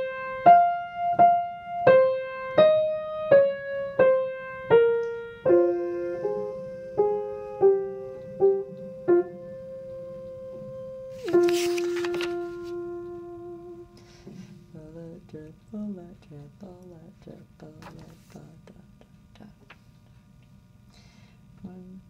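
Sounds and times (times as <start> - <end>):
piano playing: 0.0 - 14.2.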